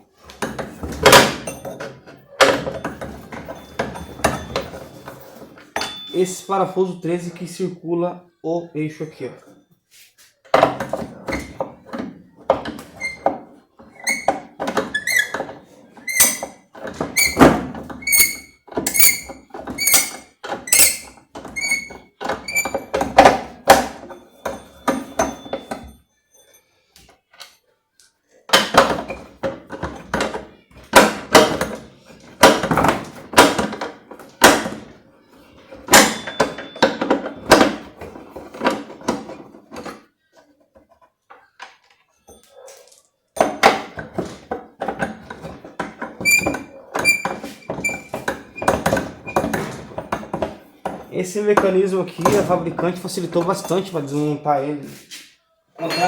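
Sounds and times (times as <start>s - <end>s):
wrench squeaks: 13.9s - 15.4s, 16.0s - 23.0s, 46.2s - 49.6s
wrench metal strokes: 18.0s - 21.9s.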